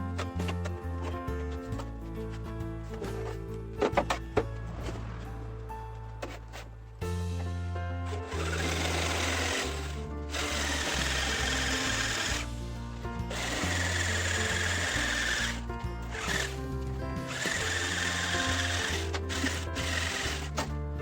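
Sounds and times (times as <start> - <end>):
background music: 0.0 - 21.0
power tool whining on sheet steel: 8.1 - 12.6, 13.2 - 20.8.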